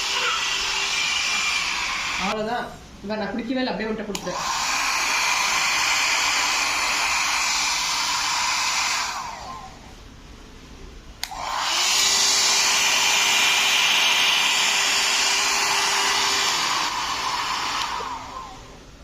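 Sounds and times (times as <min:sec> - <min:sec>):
hair dryer blowing: 0:00.0 - 0:02.5, 0:04.1 - 0:09.9, 0:11.2 - 0:19.0
hair dryer switch click: 0:04.1 - 0:04.6, 0:11.2 - 0:11.6, 0:16.3 - 0:18.0.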